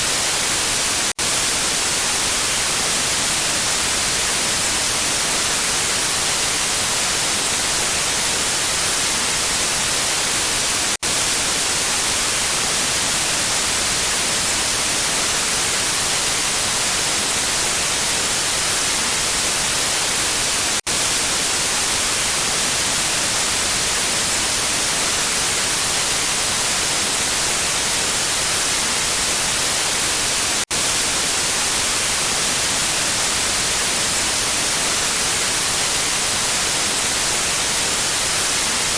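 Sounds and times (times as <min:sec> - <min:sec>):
static hiss: 0:00.0 - 0:38.9.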